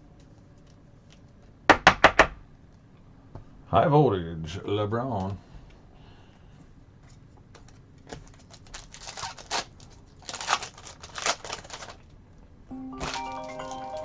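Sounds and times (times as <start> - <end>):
music: 12.7 - 14.0.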